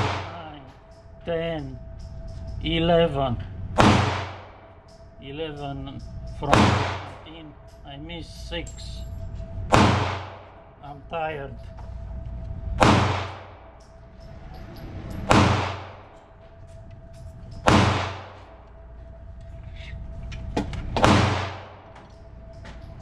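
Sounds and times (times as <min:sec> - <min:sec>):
gunshots with echoing tail: 0:00.0 - 0:01.0, 0:03.7 - 0:05.0, 0:06.3 - 0:07.6, 0:09.7 - 0:10.8, 0:12.8 - 0:14.4, 0:15.1 - 0:16.4, 0:17.5 - 0:18.7, 0:20.6 - 0:22.9.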